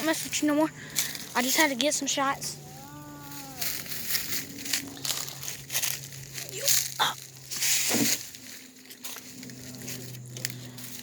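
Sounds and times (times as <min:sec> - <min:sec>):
crunching in dry grass and twigs: 0:00.0 - 0:11.0
steady low hum: 0:00.0 - 0:11.0.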